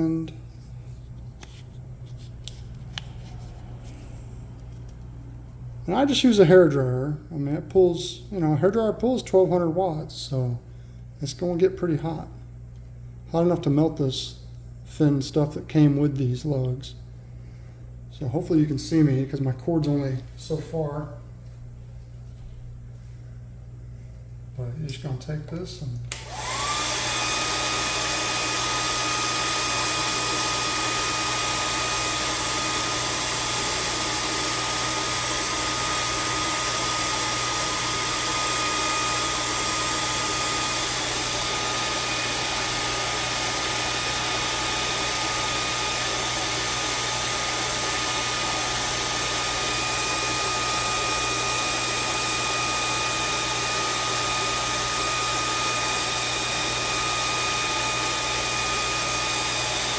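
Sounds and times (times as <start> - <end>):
hair dryer blowing air: 26.1 - 59.9.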